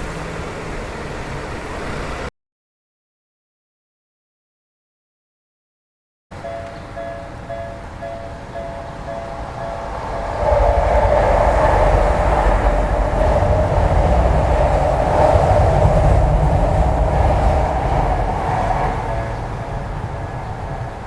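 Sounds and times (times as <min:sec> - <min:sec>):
electric train rumble and wheel noise: 0:00.0 - 0:02.3, 0:06.3 - 0:21.0
level crossing warning bell: 0:06.3 - 0:10.4, 0:18.9 - 0:21.0.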